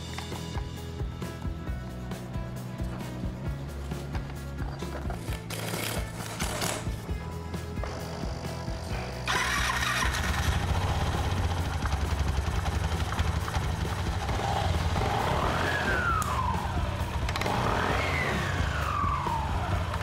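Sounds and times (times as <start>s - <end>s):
scooter engine revving: 7.8s - 20.0s.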